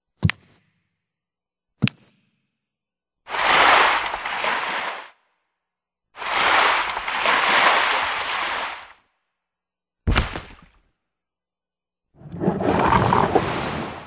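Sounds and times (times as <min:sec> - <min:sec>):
bursts of rushing noise: 0:03.3 - 0:05.1, 0:06.2 - 0:08.9.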